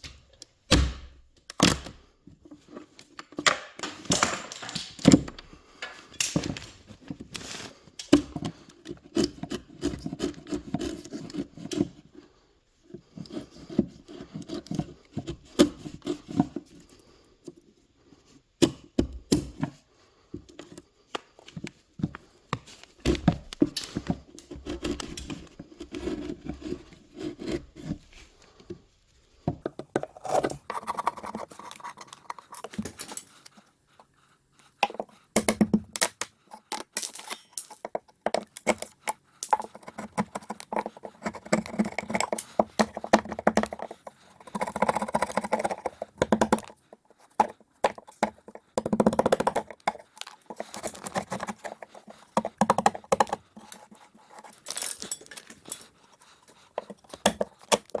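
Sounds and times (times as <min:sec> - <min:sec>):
wood scraping: 0:21.4 - 0:33.5, 0:37.8 - 0:58.0.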